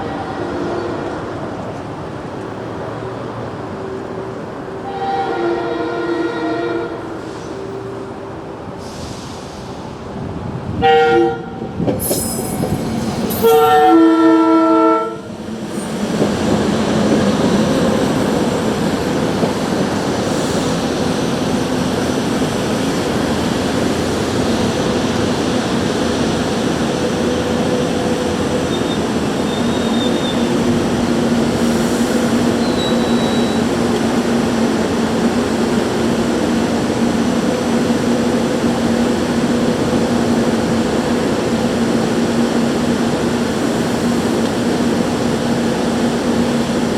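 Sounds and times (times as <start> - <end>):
train wheels rumbling: 0.0 - 46.9
locomotive horn: 4.8 - 7.4, 10.8 - 11.8, 13.3 - 15.3.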